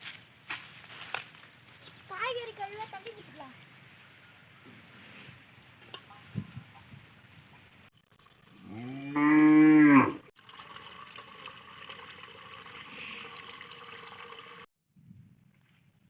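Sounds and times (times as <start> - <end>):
water running from a tap: 8.0 - 8.8, 10.4 - 14.7
cow mooing: 8.6 - 10.3.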